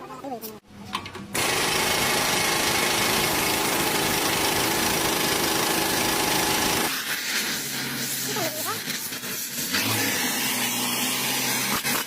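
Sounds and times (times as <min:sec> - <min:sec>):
power tool rattling: 0:01.4 - 0:06.9.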